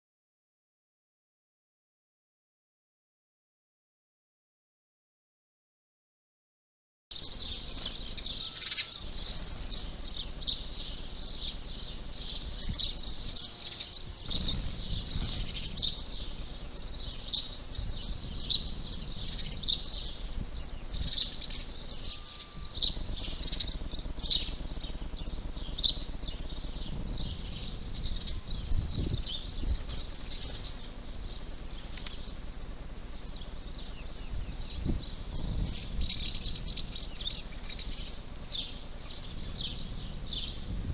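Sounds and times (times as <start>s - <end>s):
high-pitched bird trill: 7.1s - 32.4s
sparrows chirping: 7.1s - 40.9s.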